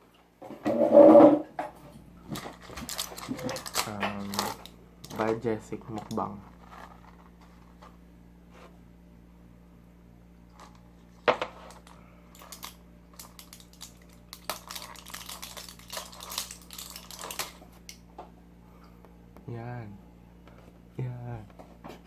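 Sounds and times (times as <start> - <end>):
packaging crinkling and clicking: 2.3 - 7.4, 11.7 - 18.0.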